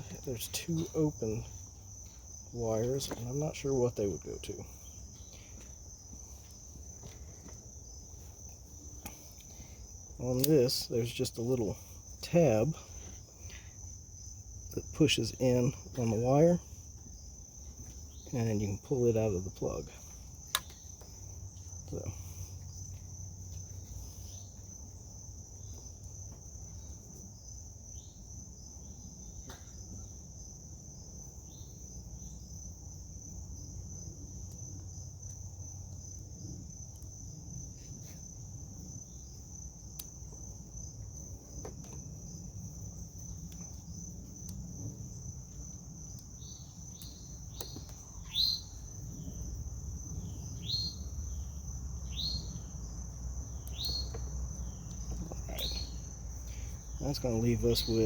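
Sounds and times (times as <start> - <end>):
insects trilling: 0.0 - 58.0
light clicks and chirps: 10.3 - 10.6, 20.0 - 24.7, 46.1 - 48.9, 53.6 - 58.0.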